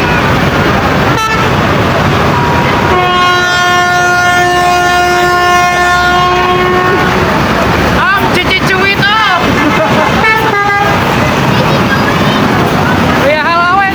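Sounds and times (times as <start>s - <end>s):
loud traffic noise: 0.0s - 13.9s
bus horn long blast: 1.0s - 7.5s, 9.7s - 11.8s.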